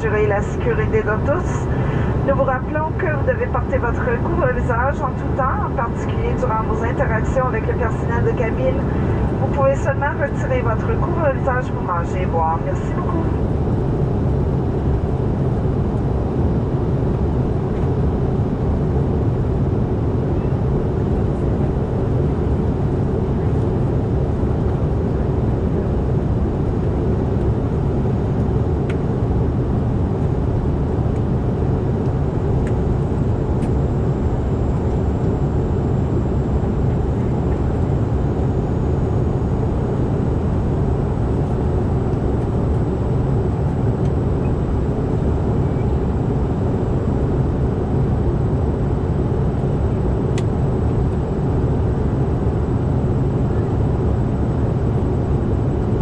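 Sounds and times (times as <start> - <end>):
jet engines droning: 0.0 - 56.0.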